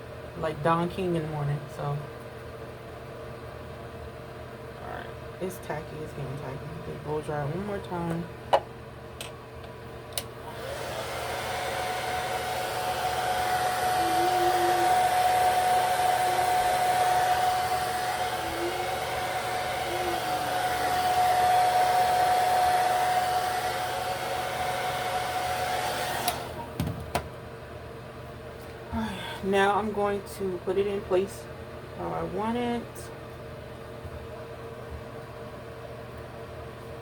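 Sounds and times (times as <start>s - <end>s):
hair dryer blowing with whine: 10.2s - 26.7s.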